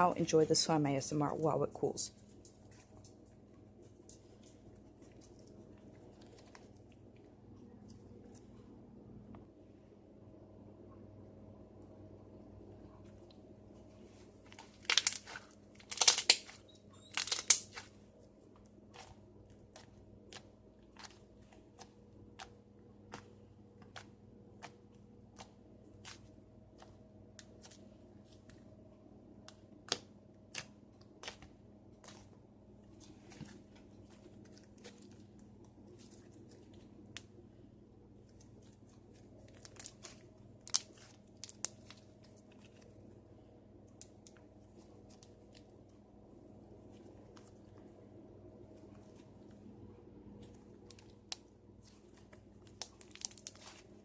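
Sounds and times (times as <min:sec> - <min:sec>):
slime being squished: 0:14.5 - 0:18.0, 0:18.6 - 0:28.6, 0:29.8 - 0:37.4, 0:38.1 - 0:42.9, 0:50.3 - 0:54.0
slime crackling and popping: 0:14.5 - 0:18.0, 0:38.3 - 0:42.6, 0:50.7 - 0:54.0.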